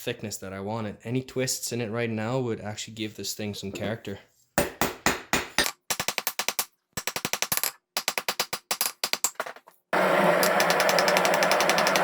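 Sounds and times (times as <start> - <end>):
machine knocking rhythmically: 10.6 - 12.0.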